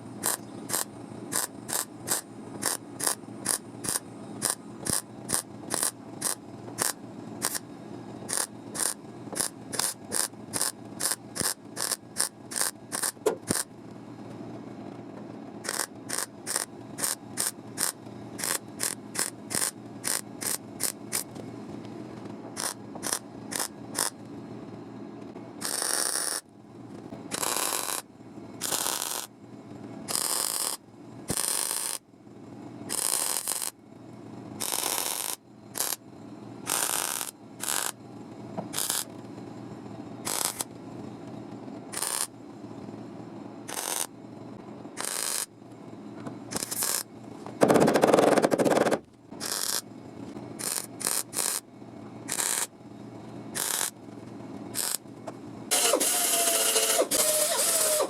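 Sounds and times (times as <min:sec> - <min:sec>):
steady low hum: 0:00.0 - 0:58.0
welding zaps and crackling: 0:00.2 - 0:07.6, 0:08.3 - 0:13.7, 0:15.7 - 0:21.3, 0:22.6 - 0:24.2, 0:28.6 - 0:29.3, 0:30.1 - 0:32.0, 0:32.9 - 0:33.7, 0:34.6 - 0:36.0, 0:36.7 - 0:38.0, 0:38.8 - 0:39.1, 0:40.3 - 0:40.7, 0:42.0 - 0:42.3, 0:43.7 - 0:44.1, 0:45.0 - 0:45.5, 0:46.5 - 0:47.0, 0:49.4 - 0:49.8, 0:50.6 - 0:51.6, 0:52.3 - 0:52.7, 0:53.6 - 0:53.9, 0:54.8 - 0:55.0.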